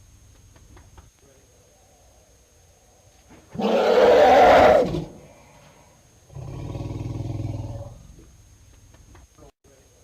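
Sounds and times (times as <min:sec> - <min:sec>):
elephant low buzzing call: 0:03.5 - 0:05.5, 0:06.3 - 0:08.2
elephant harsh call: 0:03.6 - 0:05.2.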